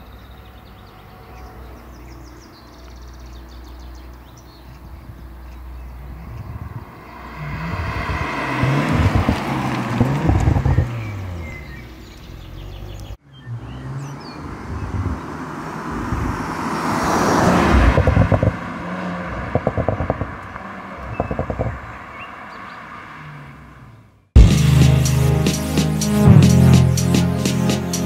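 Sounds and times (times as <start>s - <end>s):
exhaust crackling: 1.8s - 28.0s
tyre and wind noise: 4.7s - 11.8s, 14.5s - 16.5s
car engine driving past: 5.3s - 24.1s.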